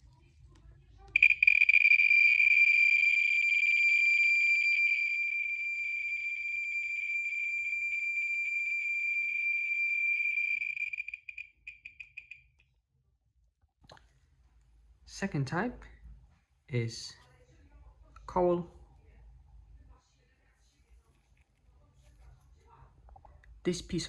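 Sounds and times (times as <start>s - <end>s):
radiation detector buzzing: 1.2s - 12.4s.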